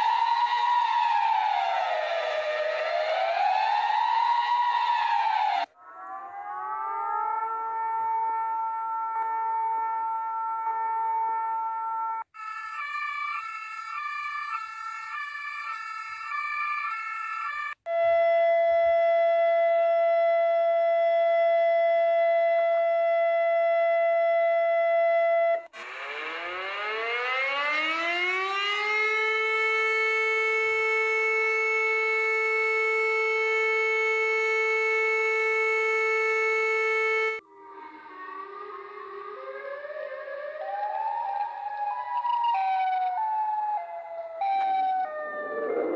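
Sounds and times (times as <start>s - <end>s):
winding siren wail: 0.0s - 45.9s
steady alarm tone: 25.7s - 45.9s
two-note alternating alarm tone: 25.8s - 45.9s.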